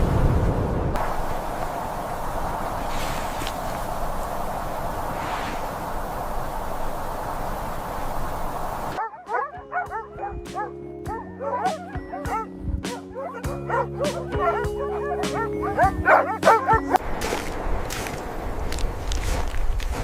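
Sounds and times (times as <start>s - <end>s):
windy hiss: 0.0s - 9.0s, 17.0s - 20.0s
dogs yipping and whining: 9.0s - 17.0s.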